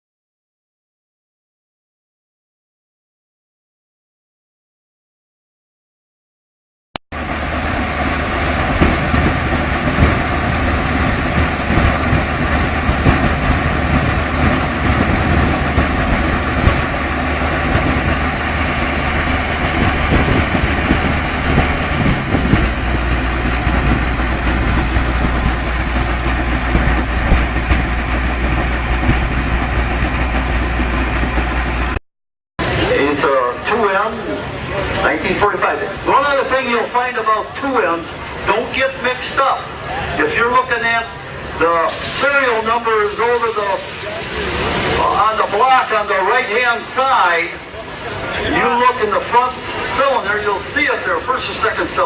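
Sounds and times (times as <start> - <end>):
engine low rumble: 7.1 - 32.0, 32.6 - 52.0.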